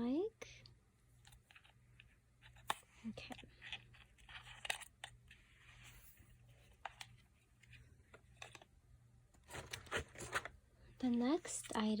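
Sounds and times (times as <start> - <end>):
low steady hum: 0.0 - 12.0
packaging clicks and rustles: 9.4 - 12.0.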